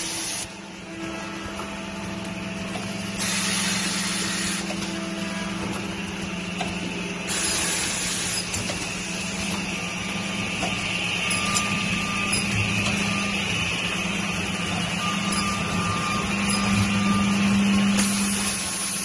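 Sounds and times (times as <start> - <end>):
machine motor hum: 0.0 - 19.0.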